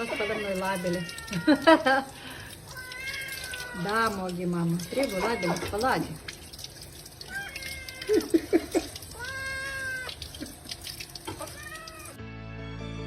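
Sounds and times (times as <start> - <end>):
cat meowing: 0.0 - 1.9, 2.7 - 6.2, 7.2 - 8.4, 9.0 - 10.4, 11.2 - 12.2.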